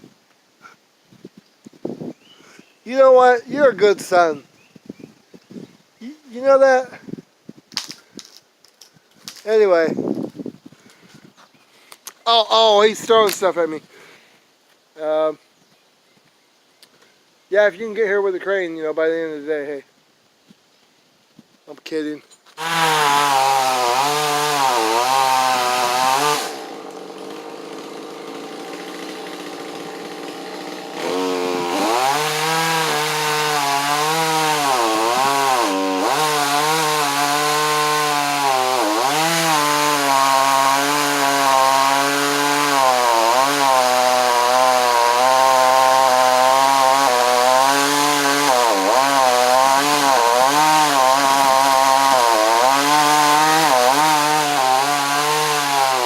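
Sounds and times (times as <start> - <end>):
chainsaw cutting wood: 22.5 - 56.0.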